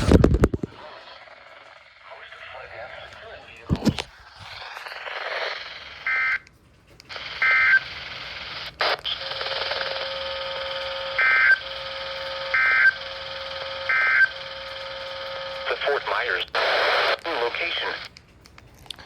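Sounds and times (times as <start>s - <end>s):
radio static hiss: 0.0s - 6.4s, 7.1s - 18.1s
data-burst tones: 7.1s - 18.0s.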